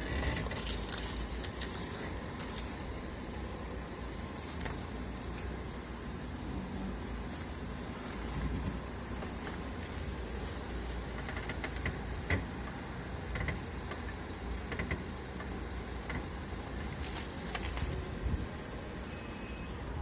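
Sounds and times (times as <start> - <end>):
steering rack creaking: 0.0 - 2.7, 7.3 - 18.1
low car rumble: 0.0 - 20.0.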